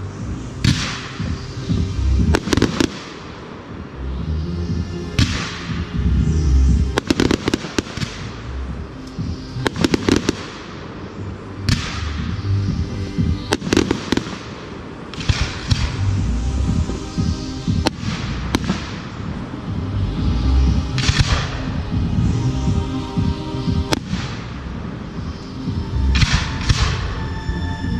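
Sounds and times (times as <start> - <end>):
music playing: 0.0 - 27.9
fireworks hissing and crackling: 0.3 - 4.0, 5.0 - 19.6
fireworks bangs: 0.6 - 3.9, 5.1 - 11.1, 11.7 - 19.7.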